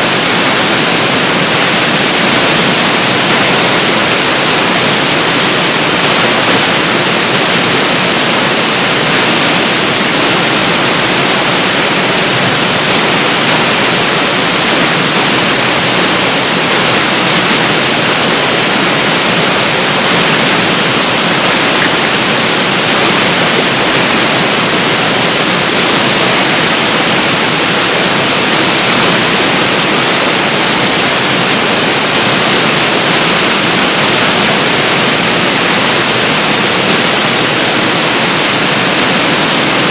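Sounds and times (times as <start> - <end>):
waterfall crashing into pool: 0.0 - 39.9.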